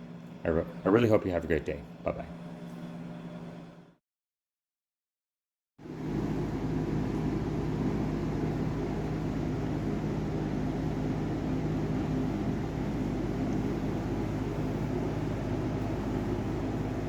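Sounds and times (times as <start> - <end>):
low hum with held tones: 5.9 - 17.0.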